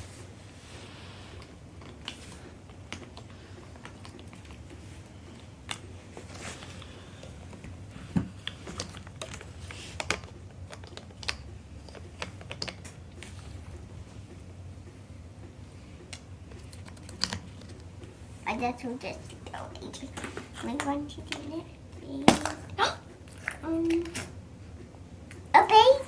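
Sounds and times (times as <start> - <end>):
plastic toys clicking and tapping: 8.4 - 14.4, 16.0 - 17.9, 19.2 - 24.4.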